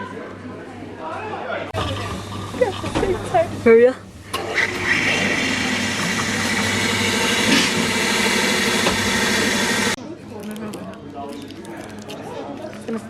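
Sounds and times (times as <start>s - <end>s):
vehicle machinery whining: 1.8s - 10.0s.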